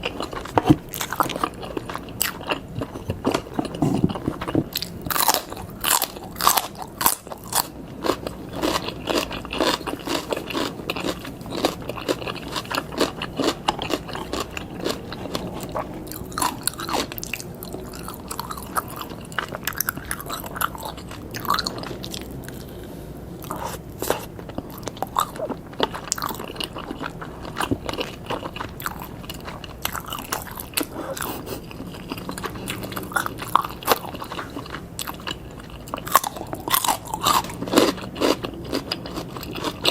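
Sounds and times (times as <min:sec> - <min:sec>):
person biting and chewing: 0:00.0 - 0:17.4.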